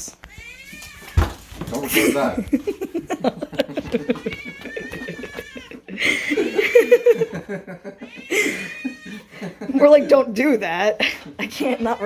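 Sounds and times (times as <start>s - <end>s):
cats meowing loudly: 0.2s - 1.8s, 3.8s - 6.5s, 8.0s - 9.3s.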